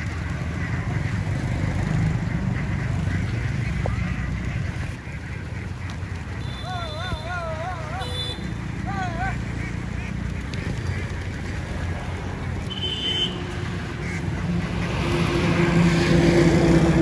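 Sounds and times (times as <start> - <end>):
vehicle engine rumbling: 0.0 - 17.0.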